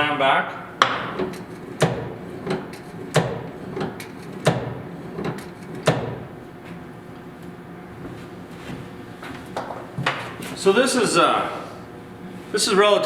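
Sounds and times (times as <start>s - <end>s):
drill press quill knocking stop: 0.8s - 6.4s.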